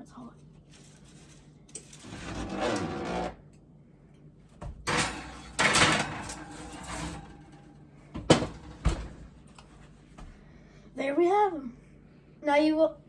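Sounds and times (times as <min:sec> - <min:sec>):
metal pan scraping on oven rack: 0:00.8 - 0:03.4, 0:04.8 - 0:09.6.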